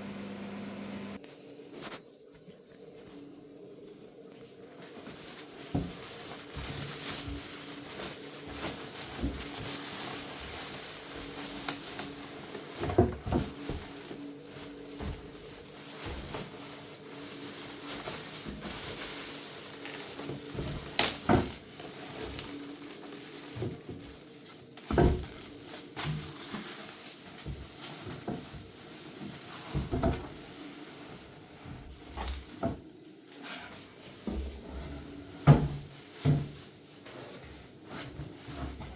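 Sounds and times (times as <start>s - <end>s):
packaging rustling: 4.6s - 31.3s.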